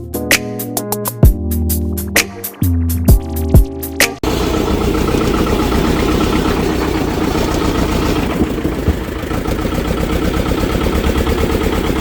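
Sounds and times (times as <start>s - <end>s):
heavy machine engine running: 4.2s - 12.0s.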